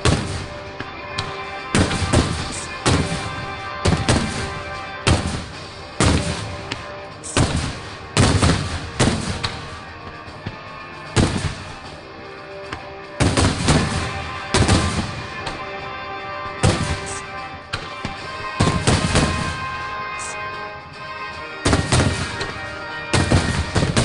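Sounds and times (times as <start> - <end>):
fireworks bursting with rumble: 0.0 - 0.6, 1.7 - 6.7, 7.3 - 9.7, 11.2 - 11.7, 13.2 - 15.3, 16.6 - 17.2, 18.6 - 19.7, 21.6 - 22.6, 23.2 - 24.0
background music: 0.0 - 24.0.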